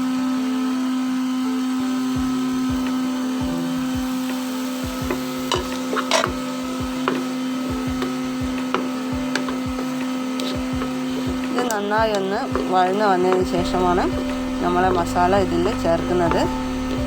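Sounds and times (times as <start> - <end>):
steady hum: 0.0 - 17.0
spatula scraping a pan: 4.1 - 17.0.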